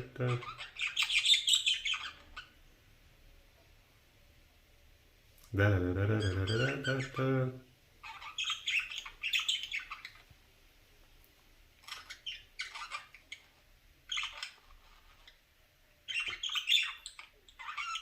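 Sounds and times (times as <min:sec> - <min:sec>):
bird chirps and squawks: 0:00.2 - 0:02.6, 0:06.2 - 0:07.2, 0:08.0 - 0:10.2, 0:11.8 - 0:15.4, 0:16.0 - 0:18.0.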